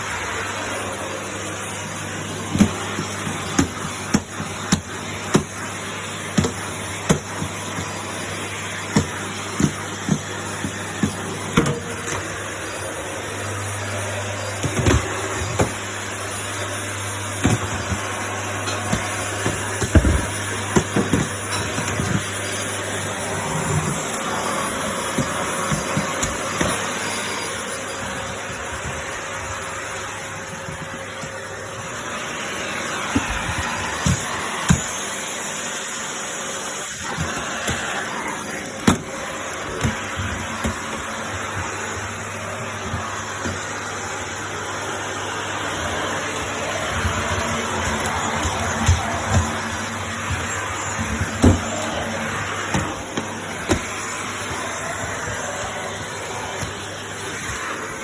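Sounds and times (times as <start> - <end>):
vacuum cleaner running: 0.0 - 58.0
vacuum nozzle knocking: 2.3 - 12.5, 45.8 - 58.0.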